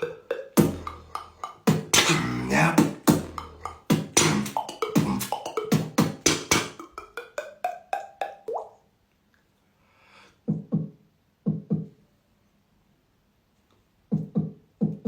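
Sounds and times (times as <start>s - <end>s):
beatboxing pops and clicks: 0.0s - 8.8s, 10.5s - 12.0s, 14.1s - 15.0s.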